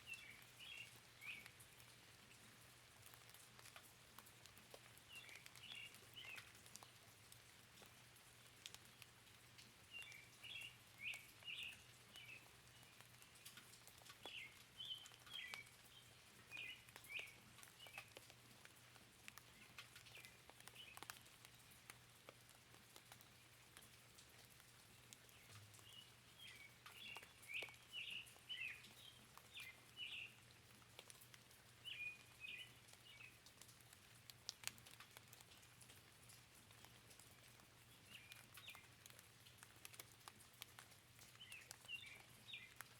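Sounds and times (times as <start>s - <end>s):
raindrop ticks: 0.0s - 42.9s
soft hiss of rain: 0.0s - 42.9s
bird chirping: 14.2s - 18.1s, 25.3s - 30.4s, 31.8s - 33.4s, 41.3s - 42.9s.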